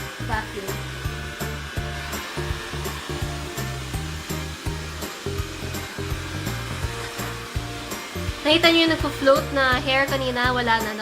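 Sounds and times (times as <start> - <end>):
robot vacuum whirring: 0.0 - 11.0
music with beat and bass: 1.0 - 10.6.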